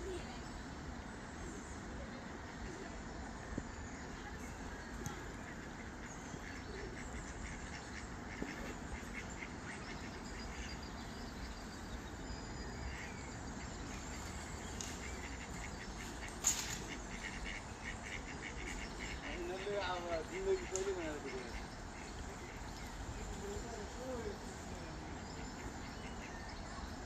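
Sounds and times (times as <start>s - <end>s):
steady background hiss: 0.0s - 27.0s
ducks quacking: 5.1s - 10.9s, 12.8s - 27.0s.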